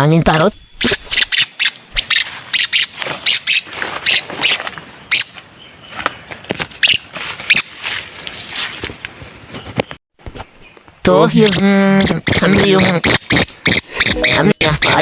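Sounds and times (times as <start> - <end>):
parrot shrill squeaks: 2.0 - 5.4, 6.8 - 7.8.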